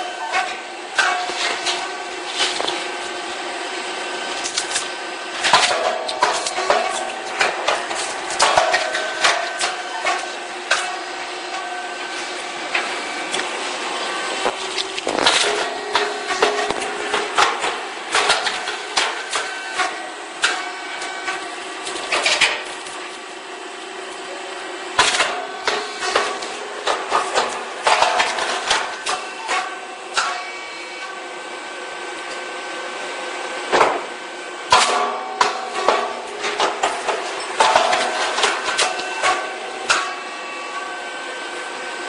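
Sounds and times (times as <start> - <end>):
popping machine hum: 0.0 - 42.0
machine clattering and knocks: 5.4 - 11.0, 21.9 - 22.8, 34.7 - 40.2.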